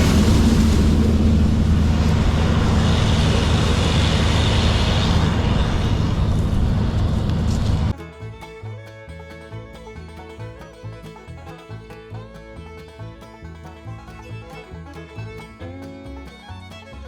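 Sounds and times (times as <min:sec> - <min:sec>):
banjo bluegrass music: 0:00.0 - 0:02.7, 0:07.4 - 0:17.0
combine harvester engine drone: 0:00.0 - 0:08.0.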